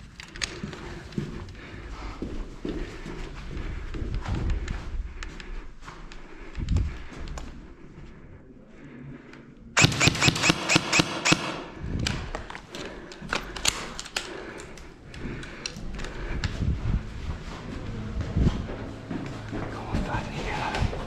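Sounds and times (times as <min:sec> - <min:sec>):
airsoft gun rapid shots: 0:09.8 - 0:11.8.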